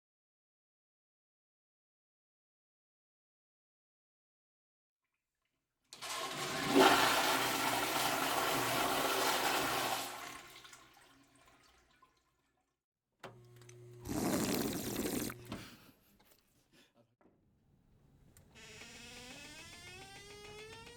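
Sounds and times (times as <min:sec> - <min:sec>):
click: 0:13.2 - 0:13.9.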